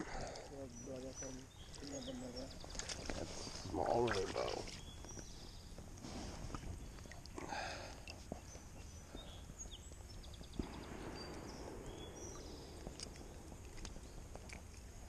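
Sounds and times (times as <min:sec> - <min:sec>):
small birds chirping: 0:00.0 - 0:15.0
steady hiss: 0:05.1 - 0:15.0.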